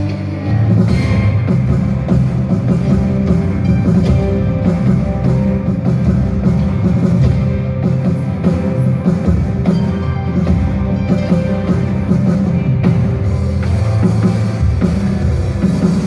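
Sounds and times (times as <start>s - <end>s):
rock worship music: 0.0s - 16.0s.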